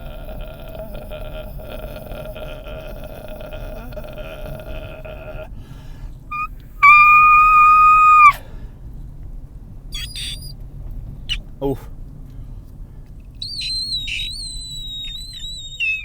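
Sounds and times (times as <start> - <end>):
man humming: 0.0 - 5.6
man's falsetto squeak: 6.3 - 8.4, 10.0 - 10.5, 13.4 - 16.0.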